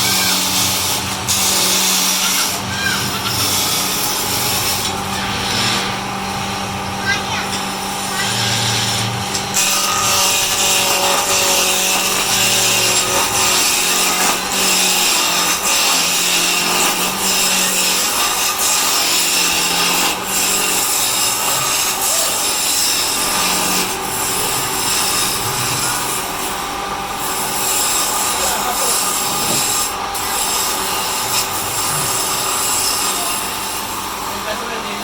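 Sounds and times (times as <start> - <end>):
lathe motor hum: 0.0 - 35.0
lathe tool scraping wood: 0.0 - 35.0.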